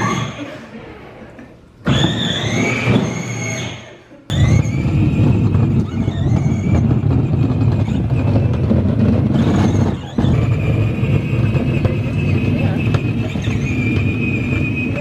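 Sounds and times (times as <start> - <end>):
wheels rumbling on pavement: 4.3 - 15.0.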